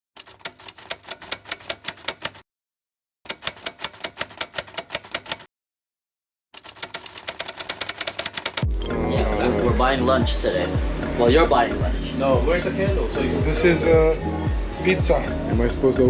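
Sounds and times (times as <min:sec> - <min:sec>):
rapid keystroke clicks: 0:03.3 - 0:05.5, 0:06.6 - 0:08.7.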